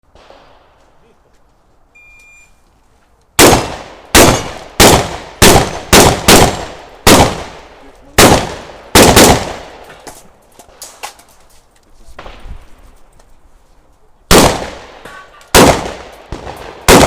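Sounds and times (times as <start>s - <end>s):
shot timer beep: 2.0s - 2.6s
shotgun shots: 3.4s - 9.8s, 14.3s - 17.0s.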